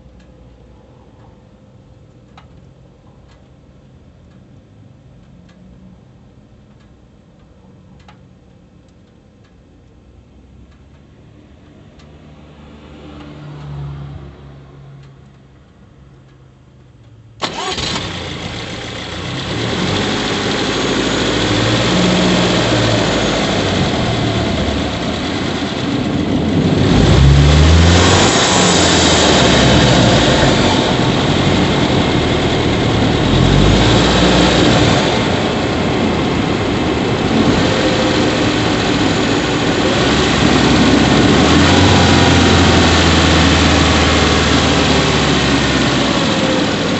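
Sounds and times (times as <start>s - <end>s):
car engine starting and idling: 12.9s - 46.9s.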